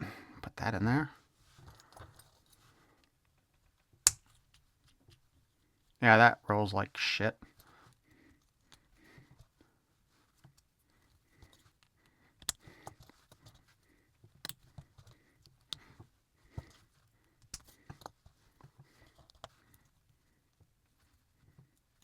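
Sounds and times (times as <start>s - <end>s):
plastic parts clicking: 12.4s - 13.6s.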